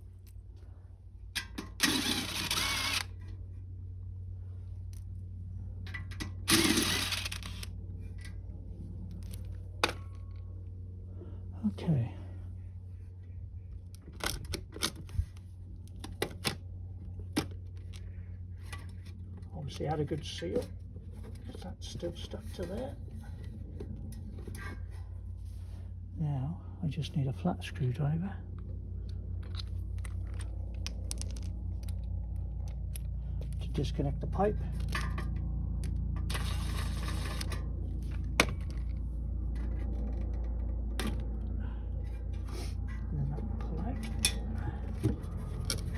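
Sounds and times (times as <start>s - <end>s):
steady low hum: 0.0s - 45.9s
metal tools clicking and knocking: 29.4s - 32.0s.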